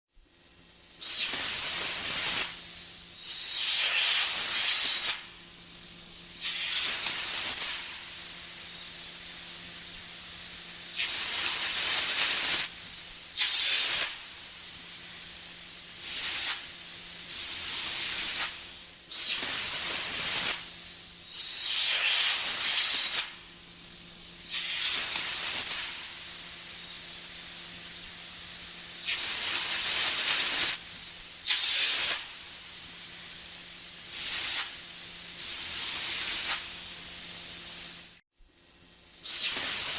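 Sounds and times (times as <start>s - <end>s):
iguana hissing: 3.2s - 5.2s.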